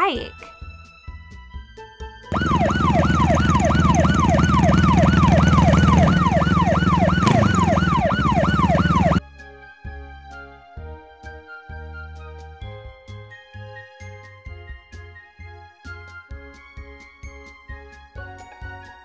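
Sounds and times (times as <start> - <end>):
low engine rumble: 2.3 - 9.2
siren yelping: 2.3 - 9.2.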